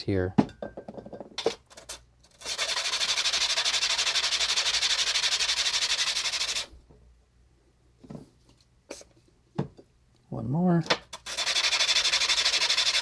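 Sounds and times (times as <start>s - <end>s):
brake pad scratching on sandpaper: 2.4s - 6.7s, 11.2s - 13.0s.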